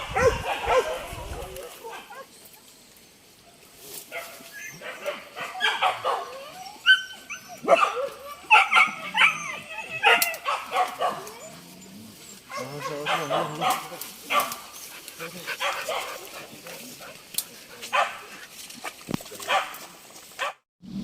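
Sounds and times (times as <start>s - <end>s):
hunting dogs yelping and baying: 0.0s - 20.6s.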